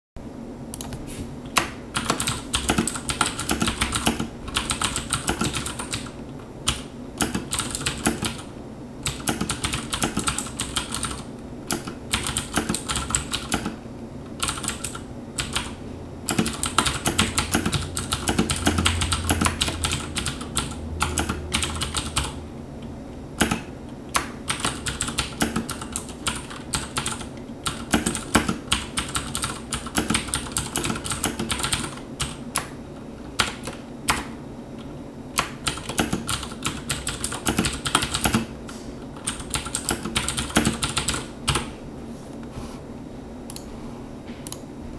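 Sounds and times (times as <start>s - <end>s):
clicky mechanical keyboard typing: 1.6s - 13.8s, 14.4s - 22.4s, 23.4s - 32.7s, 33.4s - 34.3s, 35.4s - 38.5s, 39.2s - 41.7s.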